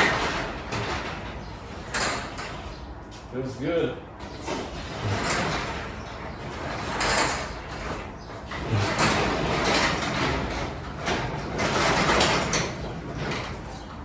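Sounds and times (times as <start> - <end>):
garage door rollers rumbling: 0.0 - 14.0.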